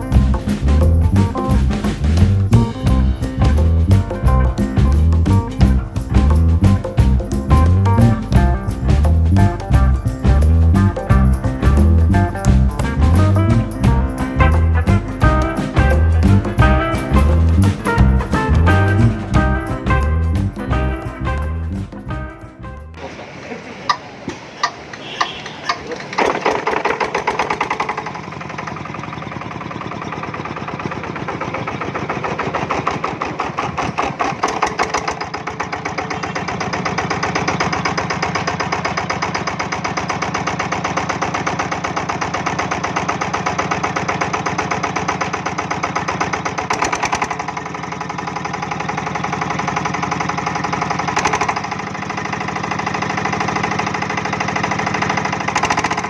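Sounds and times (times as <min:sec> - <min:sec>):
diesel engine knocking: 0:24.6 - 0:56.0.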